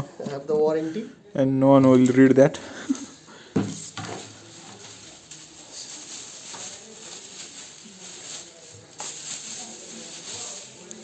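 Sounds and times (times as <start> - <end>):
paper and packaging rustling: 3.6 - 11.0.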